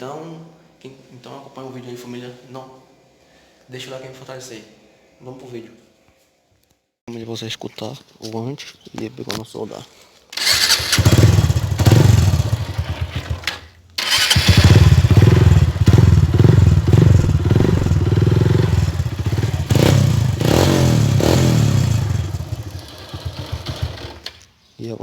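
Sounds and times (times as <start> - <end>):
motorcycle engine revving: 10.4 - 24.4.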